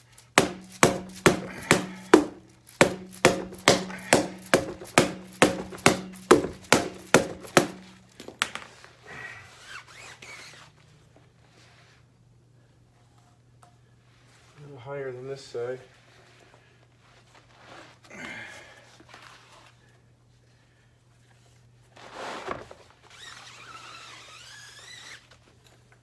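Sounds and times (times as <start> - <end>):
rubber hammer knocking on tire: 0.4 - 8.6.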